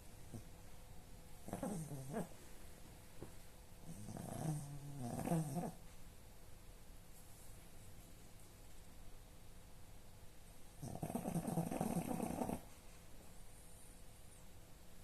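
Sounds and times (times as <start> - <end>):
animal snoring: 1.4 - 2.3, 3.9 - 5.8, 10.8 - 12.7.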